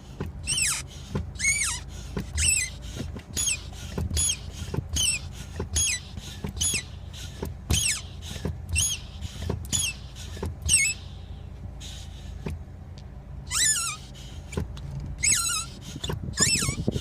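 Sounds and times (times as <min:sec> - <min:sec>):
brake pedal squeaking: 0:00.0 - 0:17.0.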